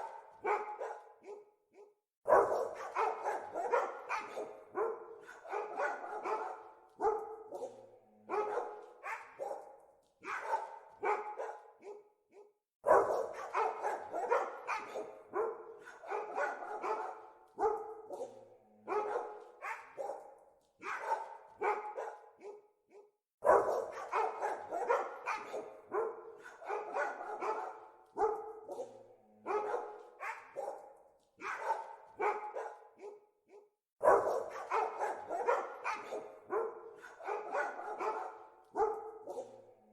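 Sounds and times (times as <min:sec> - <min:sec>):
dogs barking: 0:00.0 - 0:39.9.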